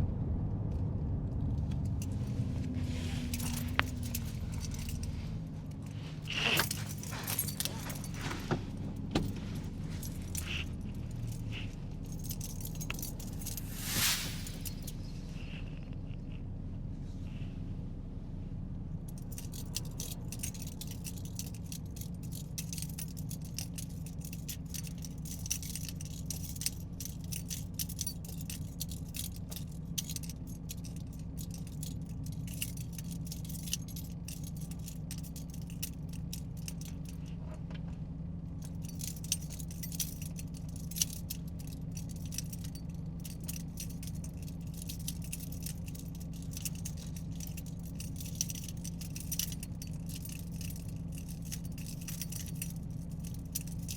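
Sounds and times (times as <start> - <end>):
engine and road rumble: 0.0 - 53.9
loose items rattling: 38.7 - 53.9.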